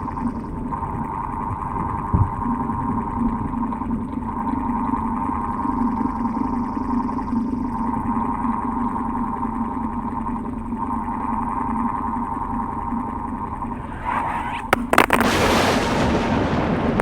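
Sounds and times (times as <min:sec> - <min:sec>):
loud rushing noise: 0:13.6 - 0:16.0.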